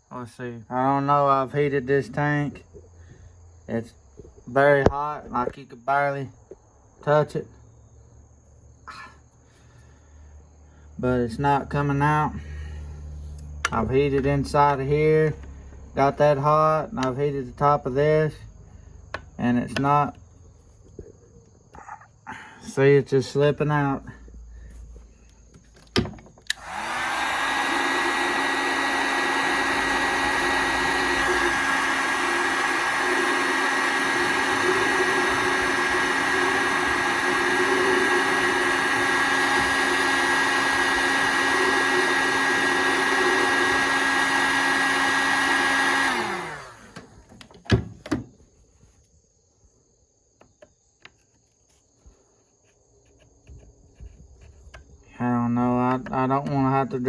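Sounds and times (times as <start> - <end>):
heat gun running: 26.0 - 47.3.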